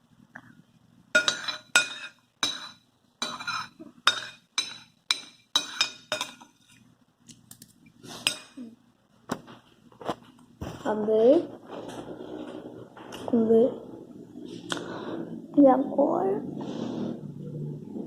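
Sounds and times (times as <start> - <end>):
cutlery clinking on a plate: 1.2 - 6.6, 8.2 - 8.6.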